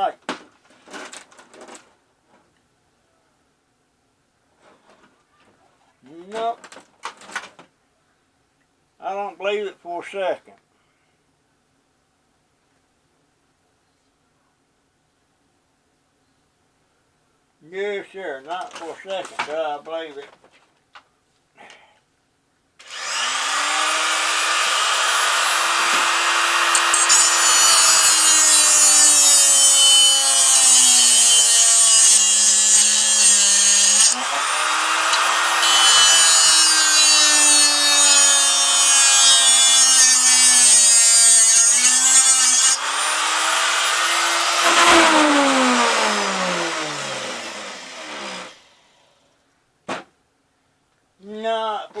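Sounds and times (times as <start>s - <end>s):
cut-off tool grinding: 22.8s - 48.7s.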